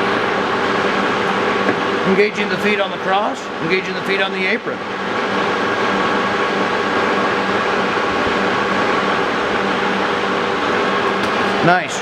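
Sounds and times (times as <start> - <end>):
lathe hum and gear whine: 0.0 - 12.0.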